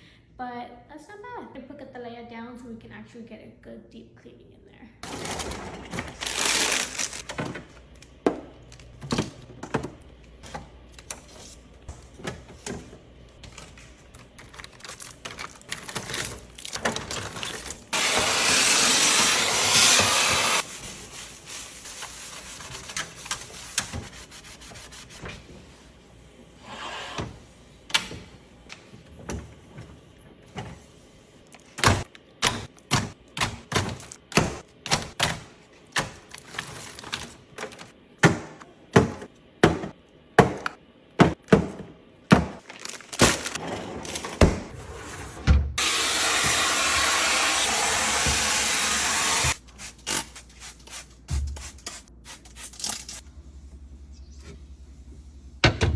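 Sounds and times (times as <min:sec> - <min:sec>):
rubbing and scrubbing: 0:19.2 - 0:27.7.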